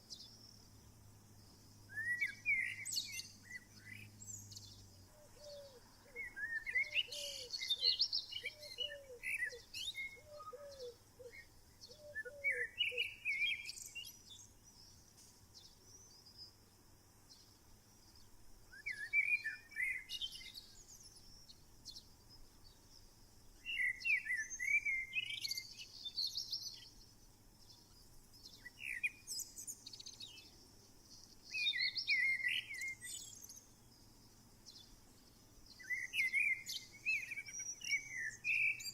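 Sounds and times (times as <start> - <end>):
songbirds warbling and twittering: 0.0 - 38.9.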